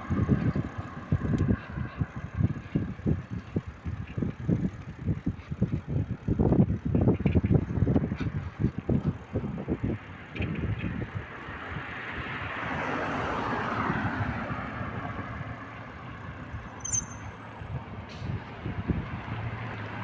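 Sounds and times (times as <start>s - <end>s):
road vehicle passing: 0.0s - 20.0s.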